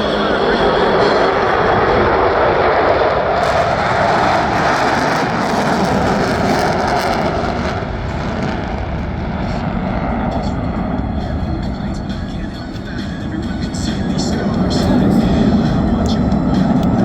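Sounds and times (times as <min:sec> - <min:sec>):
jet flying past: 0:00.0 - 0:17.0.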